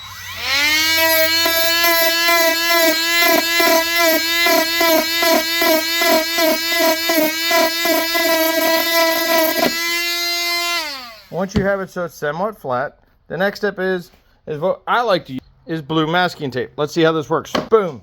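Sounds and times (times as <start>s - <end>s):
rotary tool high whine: 0.0s - 11.4s
rotary tool grinding fiberglass: 0.0s - 11.5s.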